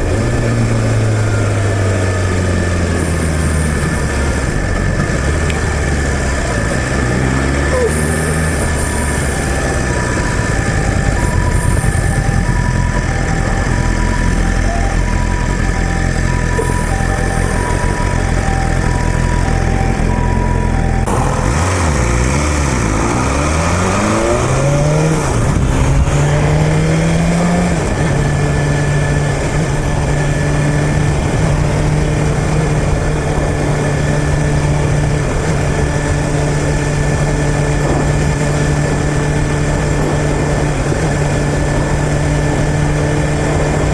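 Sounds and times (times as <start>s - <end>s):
motorcycle engine revving: 0.0s - 43.9s
two-tone siren: 0.0s - 43.9s.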